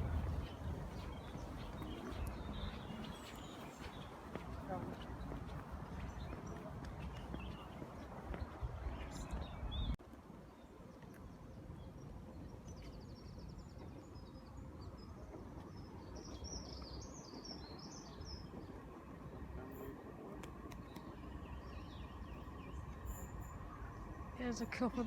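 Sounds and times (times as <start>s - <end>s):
low rumble with knocks: 0.0s - 3.2s
bird chirping: 0.0s - 10.0s, 20.7s - 25.0s
steady background noise: 0.0s - 25.0s.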